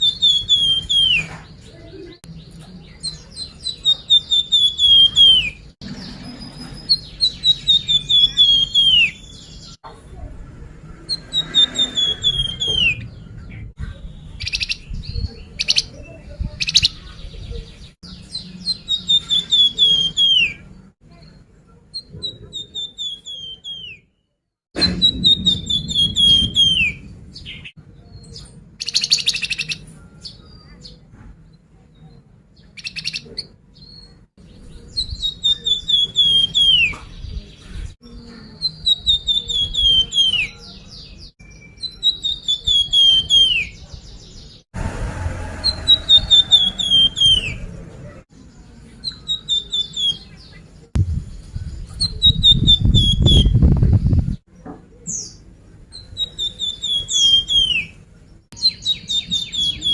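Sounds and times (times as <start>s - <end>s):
bird song with descending notes: 0.0s - 1.6s, 2.3s - 21.4s, 24.8s - 31.0s, 33.8s - 37.4s, 45.6s - 47.8s, 56.0s - 58.0s, 58.6s - 59.9s
bird chirps: 0.0s - 10.3s, 11.0s - 24.2s, 24.8s - 31.1s, 31.9s - 44.6s, 45.7s - 58.0s, 58.6s - 59.9s.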